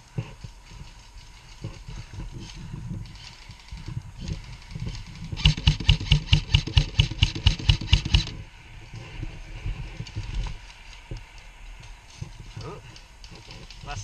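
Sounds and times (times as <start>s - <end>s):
airsoft rifle rapid fire: 5.4s - 8.4s.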